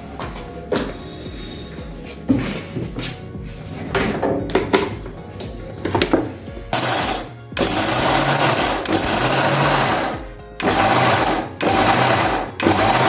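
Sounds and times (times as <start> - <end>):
mixer grinder running in bursts: 6.8 - 13.0.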